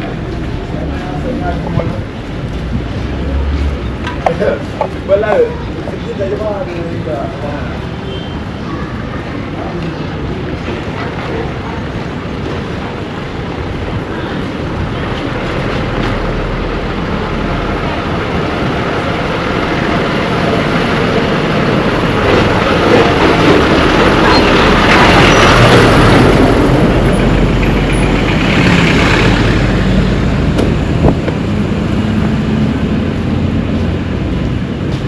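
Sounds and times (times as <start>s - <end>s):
vehicle passing close by: 16.6s - 34.6s.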